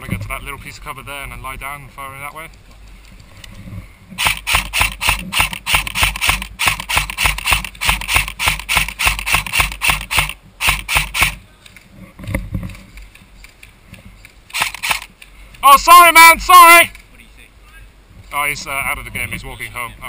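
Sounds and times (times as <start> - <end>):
airsoft rifle rapid fire: 4.2 - 11.4, 14.5 - 15.1.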